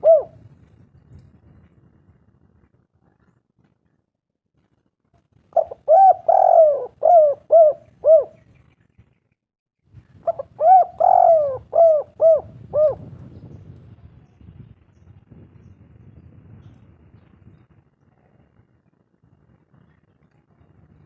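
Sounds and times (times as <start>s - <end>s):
dove cooing: 0.0s - 0.4s, 5.5s - 8.4s, 10.2s - 13.1s.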